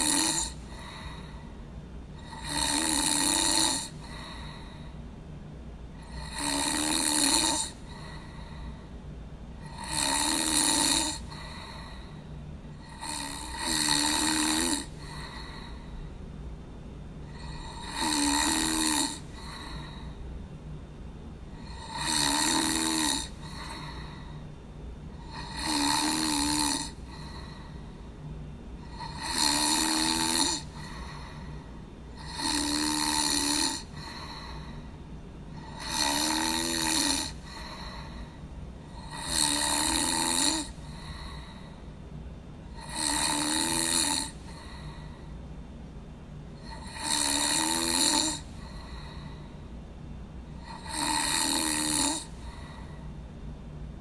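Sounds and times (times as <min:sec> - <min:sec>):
person snoring: 0:00.0 - 0:01.5, 0:02.2 - 0:05.0, 0:06.0 - 0:08.8, 0:09.6 - 0:16.1, 0:17.3 - 0:20.2, 0:21.6 - 0:24.4, 0:25.1 - 0:28.0, 0:28.8 - 0:34.9, 0:35.5 - 0:41.8, 0:42.7 - 0:45.3, 0:46.6 - 0:49.5, 0:50.6 - 0:53.0
steady low hum: 0:00.0 - 0:54.0.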